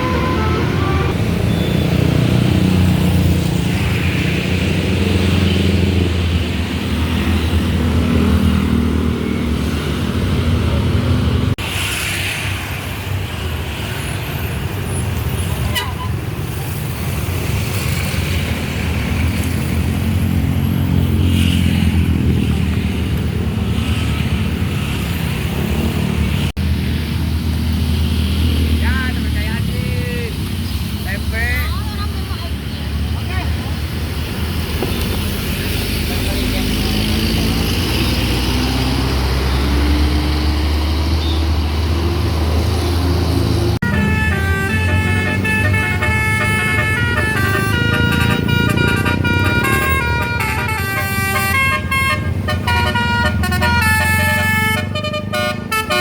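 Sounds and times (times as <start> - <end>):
melody horn playing a tune: 0.0 - 1.2, 43.8 - 56.0
diesel bus engine rumbling: 0.0 - 21.2, 21.8 - 56.0.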